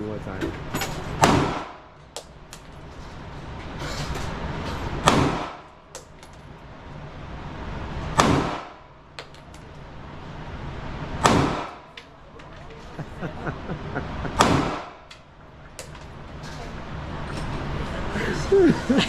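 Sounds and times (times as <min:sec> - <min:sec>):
gunshots with echo: 0:01.2 - 0:01.9, 0:05.0 - 0:05.7, 0:08.2 - 0:08.8, 0:11.2 - 0:11.9, 0:14.3 - 0:15.1.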